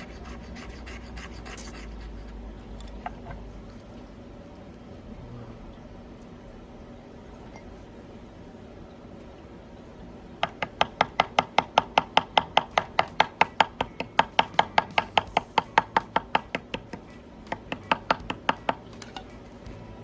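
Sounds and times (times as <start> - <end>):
knife scraping ferrocerium rod: 0.0 - 2.4.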